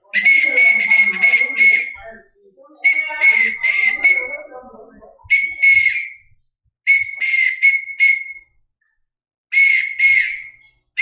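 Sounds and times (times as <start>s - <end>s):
whistle blasts: 0.0s - 2.0s, 2.8s - 4.5s, 5.3s - 6.3s, 6.9s - 8.6s, 9.5s - 10.7s.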